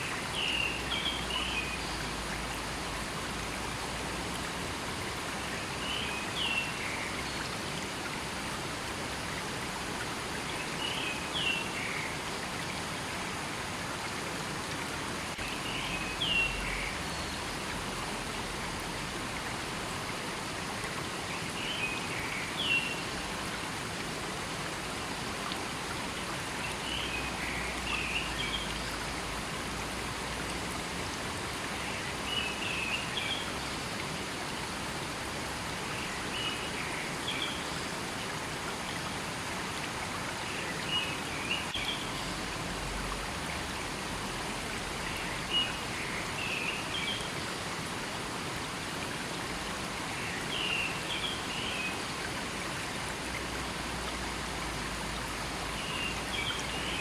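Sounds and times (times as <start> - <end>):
stream running: 0.0 - 57.0.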